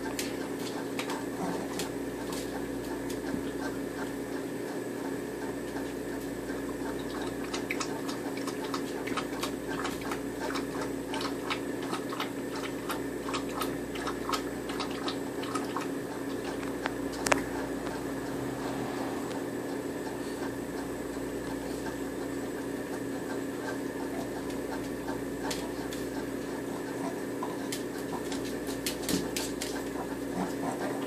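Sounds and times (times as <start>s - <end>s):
steady hum: 9.0s - 30.8s.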